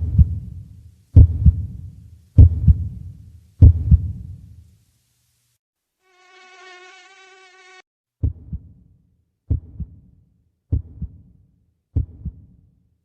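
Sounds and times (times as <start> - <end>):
heartbeat double thumps: 0.0 - 0.6, 1.2 - 4.4, 8.2 - 8.8, 9.5 - 10.0, 10.7 - 11.3, 12.0 - 12.6
wavering insect-like buzzing: 6.0 - 7.8.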